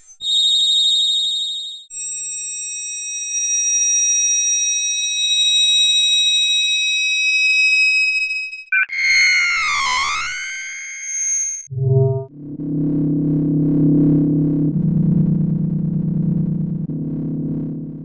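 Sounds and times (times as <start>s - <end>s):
shimmering high electronic whine: 8.9s - 13.0s
gliding electronic tone: 8.9s - 14.3s.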